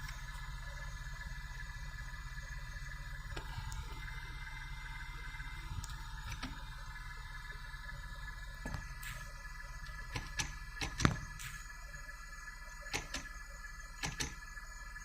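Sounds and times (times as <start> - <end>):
car engine humming: 0.0 - 15.0
engine clicks and knocks: 8.4 - 11.8, 12.8 - 14.6.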